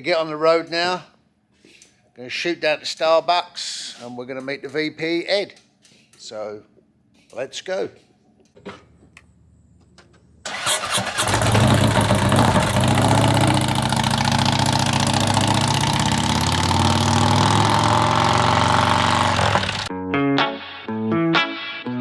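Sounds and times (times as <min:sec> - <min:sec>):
motorcycle engine starting and idling: 0:08.6 - 0:19.9.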